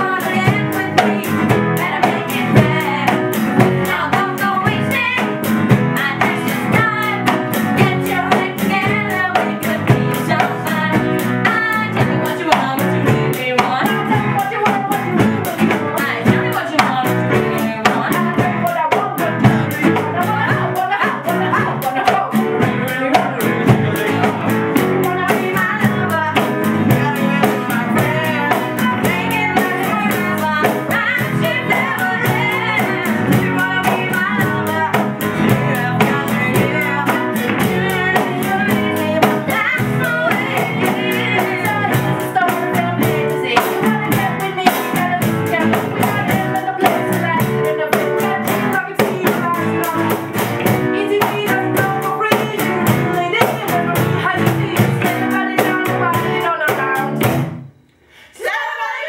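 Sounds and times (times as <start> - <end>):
person singing: 0.0 - 57.3
drum-kit beat: 0.0 - 57.8
live pop-rock band: 0.0 - 58.2
guitar: 0.0 - 58.3.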